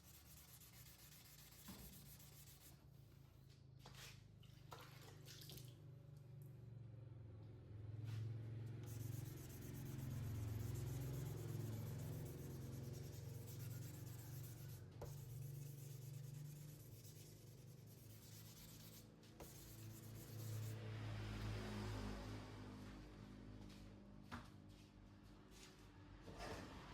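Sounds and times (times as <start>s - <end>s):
sandpaper scratching on metal panel: 0.0s - 2.7s, 8.9s - 20.7s.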